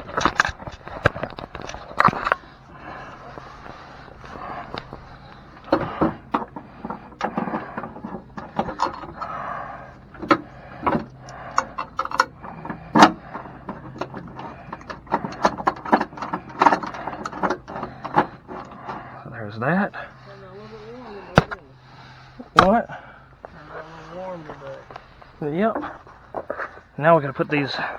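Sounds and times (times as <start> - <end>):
metal hardware clattering: 0.0 - 19.2
faint steady hum: 0.0 - 27.9.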